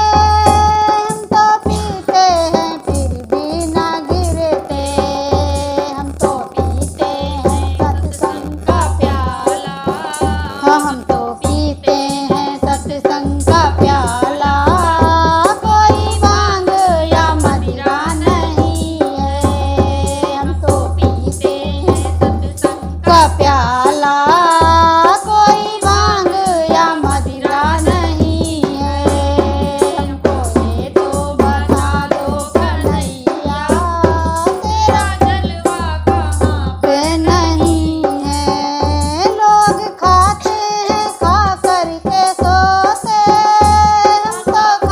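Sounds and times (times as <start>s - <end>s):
hand drums and percussion: 0.0s - 44.9s
person singing devotional song: 0.0s - 44.9s.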